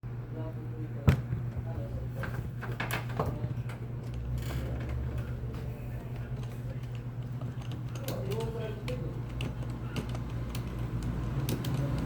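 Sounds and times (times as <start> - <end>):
steady low hum: 0.0 - 12.0
keyboard keys clicking: 4.9 - 12.0.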